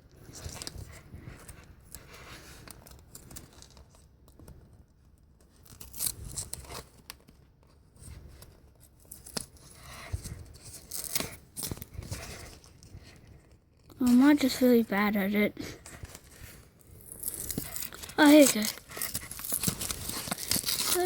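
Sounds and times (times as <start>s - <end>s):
packaging tearing and scraping: 5.5s - 7.2s, 9.0s - 14.7s, 15.6s - 21.0s.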